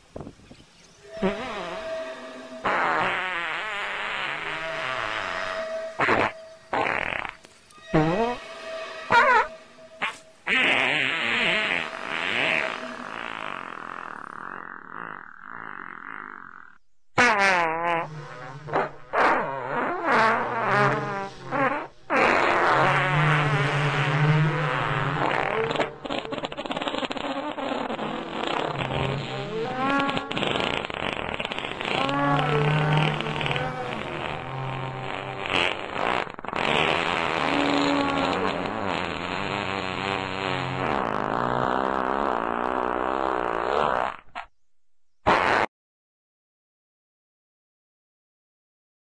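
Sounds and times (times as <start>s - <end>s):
low groaning drone: 1.1s - 2.6s, 8.0s - 10.5s.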